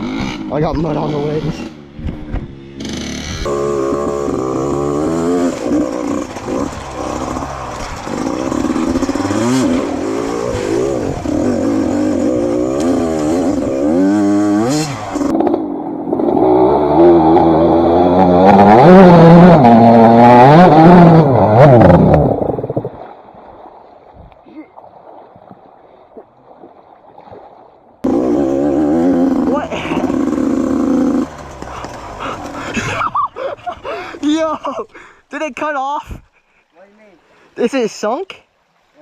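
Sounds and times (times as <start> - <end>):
dirt bike engine revving: 0.0 - 22.9, 28.0 - 33.2.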